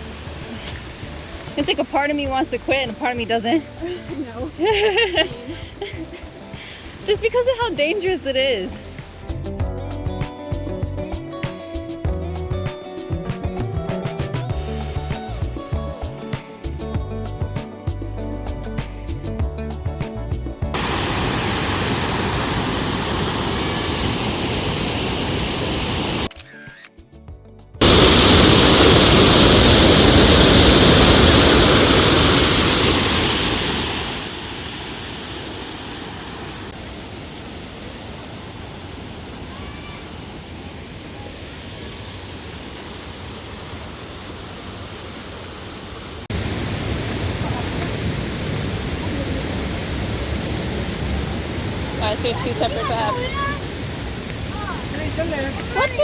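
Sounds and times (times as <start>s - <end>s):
waterfall rushing: 0.0s - 8.2s, 20.7s - 26.3s, 27.8s - 56.0s.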